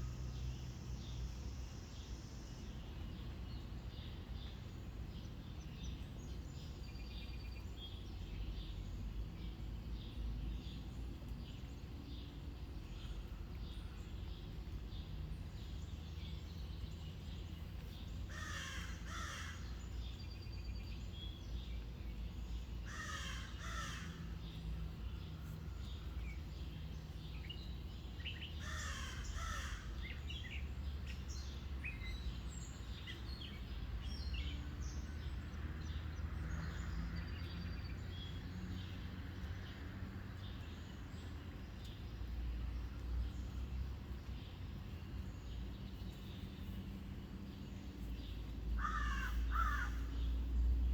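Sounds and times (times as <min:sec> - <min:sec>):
small birds chirping: 0:00.0 - 0:50.9
crow cawing: 0:18.3 - 0:19.7, 0:22.9 - 0:24.2, 0:28.6 - 0:30.0, 0:48.8 - 0:50.1
steady low rumble: 0:48.0 - 0:50.9.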